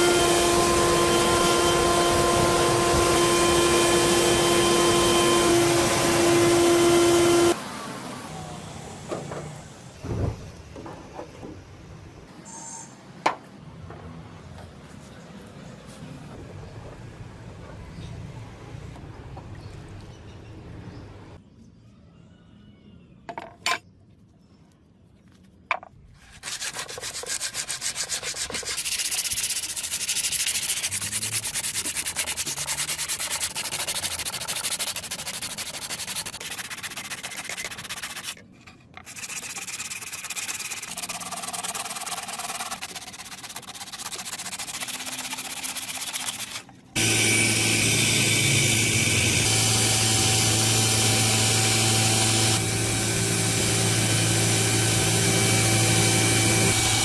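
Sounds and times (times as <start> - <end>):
power tool humming: 0.0 - 10.0, 47.0 - 57.0
sandpaper rubbing on steel: 26.2 - 38.4, 39.0 - 47.2.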